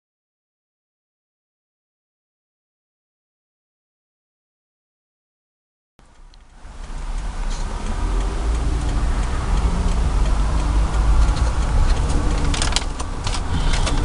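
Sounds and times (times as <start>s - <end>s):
light ticks and clicks: 6.0s - 14.0s
vehicle engine rumble: 6.0s - 14.0s.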